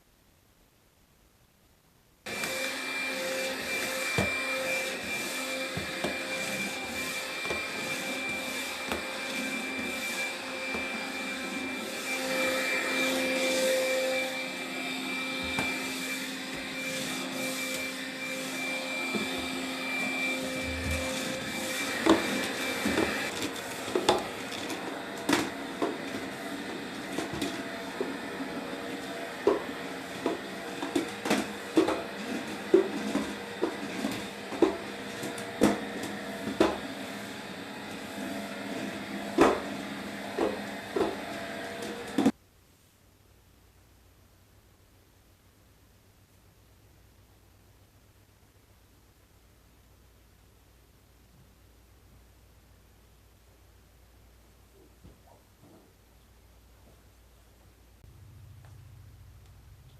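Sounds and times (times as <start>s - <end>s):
vacuum cleaner running: 2.3s - 42.4s.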